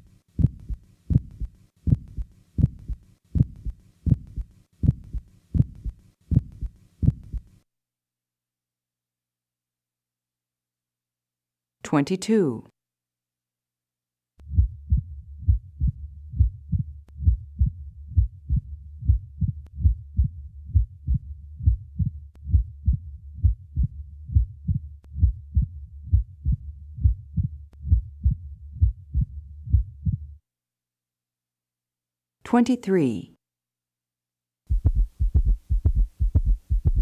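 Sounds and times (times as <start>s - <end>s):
heartbeat thuds: 0.4s - 7.5s, 14.4s - 30.4s, 34.7s - 37.0s.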